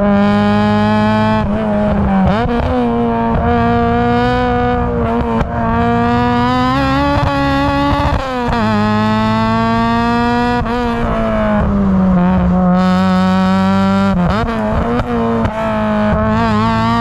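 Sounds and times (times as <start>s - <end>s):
car engine revving high: 0.0s - 17.0s.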